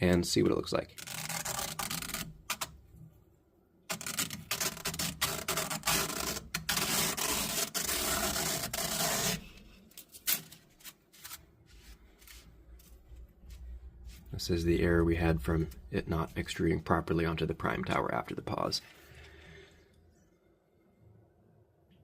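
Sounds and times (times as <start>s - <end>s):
textile scraping off print sheet: 3.9s - 14.3s.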